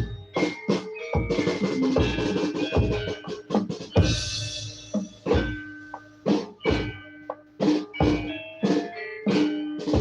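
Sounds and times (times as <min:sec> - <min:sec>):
gamelan music: 0:00.0 - 0:10.0.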